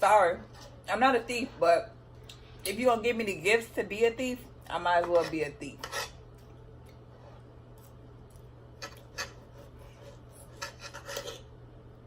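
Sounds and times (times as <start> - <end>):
cutlery scraping a plate: 5.0 - 6.2, 8.8 - 11.5.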